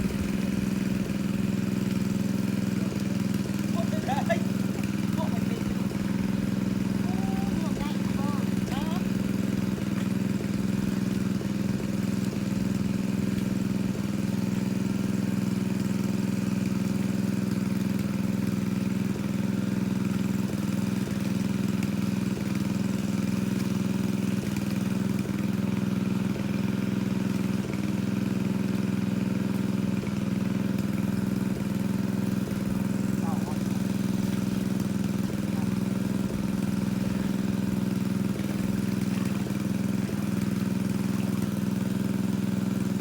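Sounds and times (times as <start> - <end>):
pump engine running: 0.0 - 43.0.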